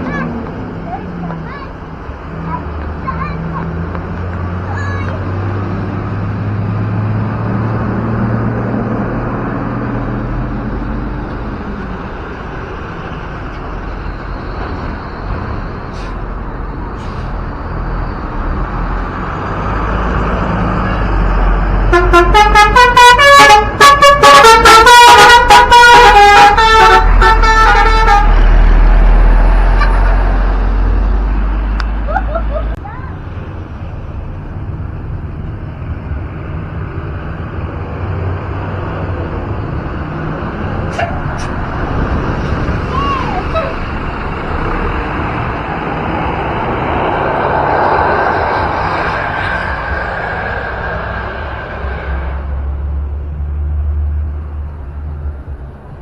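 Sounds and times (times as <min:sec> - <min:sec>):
bus engine and road noise: 0:00.0 - 0:56.0
musical multi-tone bus horn: 0:21.8 - 0:28.7
deep engine rumble: 0:25.2 - 0:56.0.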